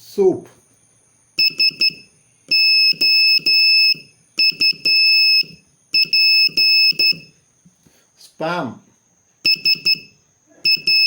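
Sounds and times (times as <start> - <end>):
morse code beeps: 1.4 - 7.3, 9.4 - 11.0.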